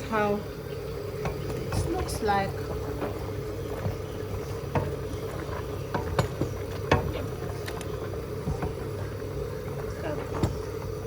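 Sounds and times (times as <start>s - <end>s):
pot boiling: 0.0s - 11.0s.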